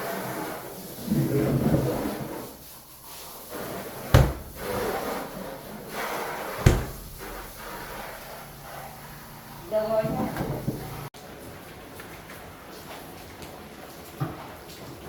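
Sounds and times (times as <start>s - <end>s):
hard objects knocking: 4.2s - 4.9s, 6.7s - 7.9s
scraping and shuffling: 6.6s - 8.2s.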